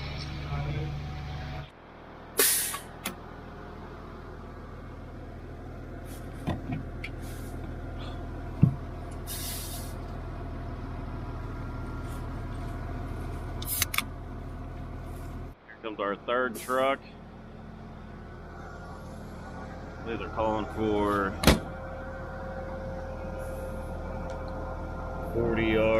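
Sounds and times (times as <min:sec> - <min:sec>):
diesel truck engine running: 0:00.0 - 0:25.9
air brake hiss: 0:02.4 - 0:02.9, 0:09.2 - 0:10.0.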